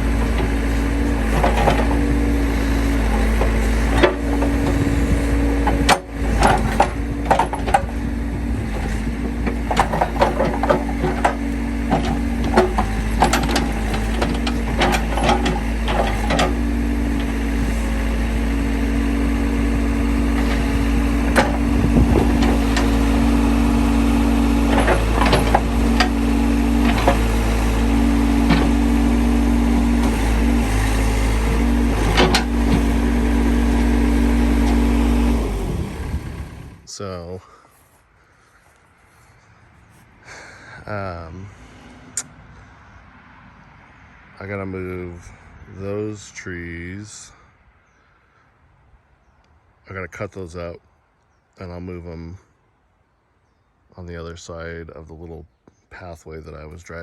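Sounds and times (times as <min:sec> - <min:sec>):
metal clanks and knocks: 0:00.0 - 0:17.9, 0:19.4 - 0:35.0
backhoe engine drone: 0:00.0 - 0:48.5.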